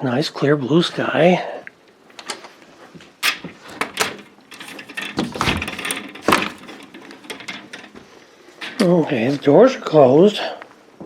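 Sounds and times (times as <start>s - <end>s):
doors shutting: 3.2s - 9.4s.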